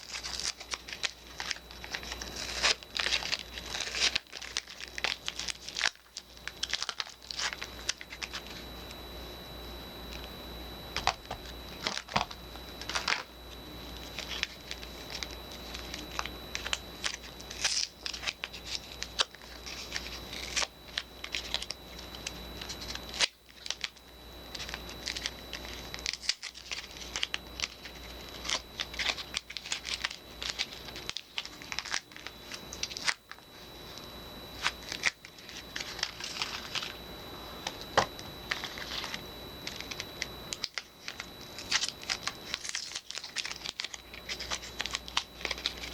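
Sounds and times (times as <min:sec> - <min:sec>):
packaging crinkling and tearing: 0:00.0 - 0:08.6, 0:11.0 - 0:13.3, 0:14.0 - 0:37.0, 0:37.6 - 0:45.9.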